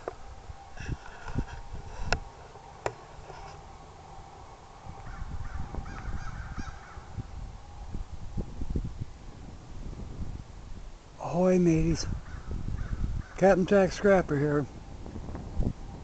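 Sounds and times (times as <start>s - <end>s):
wind rumbling on microphone: 0.0s - 16.0s
harsh bird calls: 5.0s - 7.2s.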